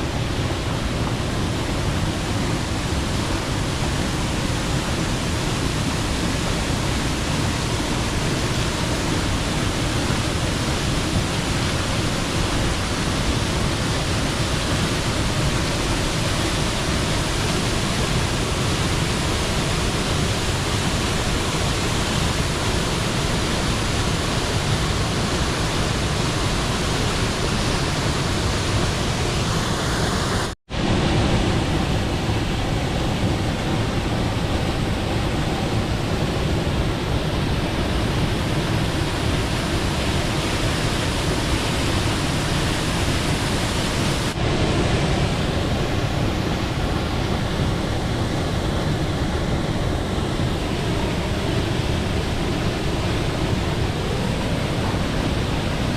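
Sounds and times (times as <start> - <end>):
waterfall rushing: 0.0 - 55.9.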